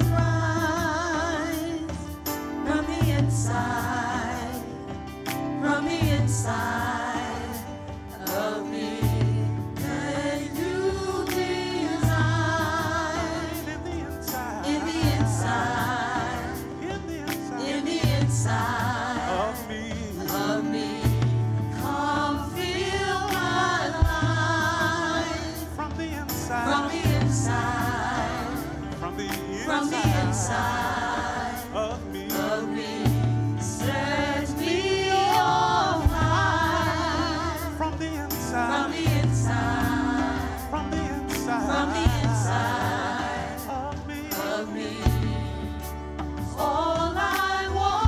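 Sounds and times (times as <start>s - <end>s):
praise team singing: 0.0s - 48.0s
bass notes: 9.0s - 13.8s, 20.8s - 48.0s
drum hits: 23.3s - 25.2s.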